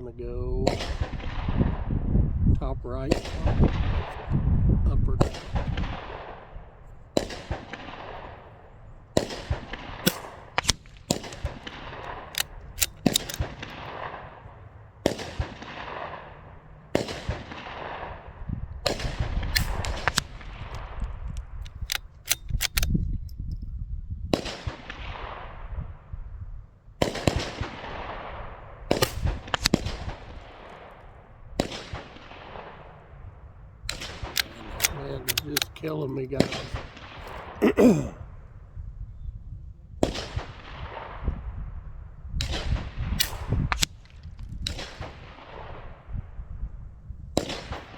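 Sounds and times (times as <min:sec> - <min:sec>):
rifle gunshots echoing: 0:00.6 - 0:01.8, 0:03.1 - 0:04.2, 0:05.2 - 0:18.2, 0:27.0 - 0:30.9
sharp cracks: 0:09.2 - 0:14.2.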